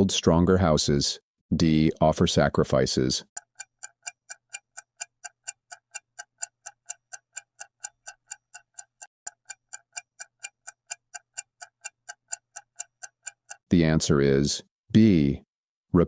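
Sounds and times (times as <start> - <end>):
clock ticking: 2.0 - 14.1.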